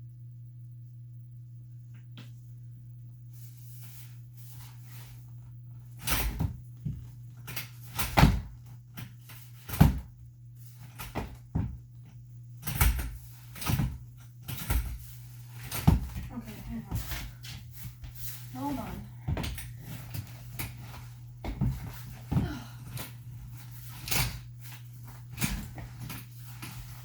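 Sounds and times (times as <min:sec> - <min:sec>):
playpen frame knocking and rattling: 0:06.0 - 0:10.1, 0:12.6 - 0:27.0.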